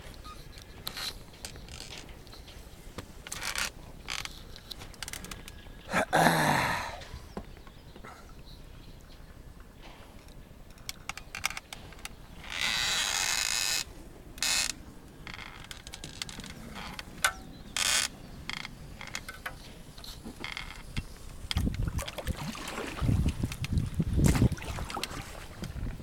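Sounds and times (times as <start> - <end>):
oars creaking in oarlocks: 0.0 - 8.3, 9.8 - 26.0
water rushing from oar strokes: 21.8 - 26.0.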